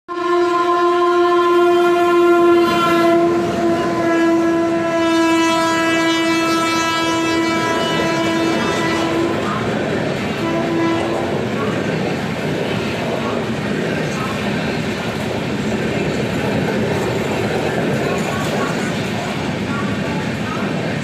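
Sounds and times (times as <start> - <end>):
locomotive horn blast: 0.1 - 9.7, 10.3 - 11.5
train wheels clickety-clack: 8.4 - 21.0.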